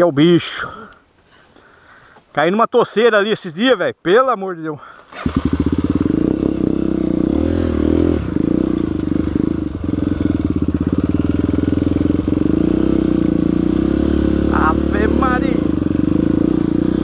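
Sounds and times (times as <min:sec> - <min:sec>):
motorcycle engine running: 0:05.1 - 0:17.0.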